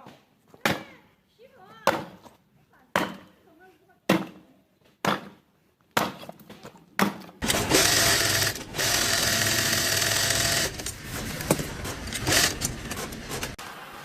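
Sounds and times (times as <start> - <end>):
machine clatter: 7.4 - 13.6
power tool whirring: 7.4 - 13.6.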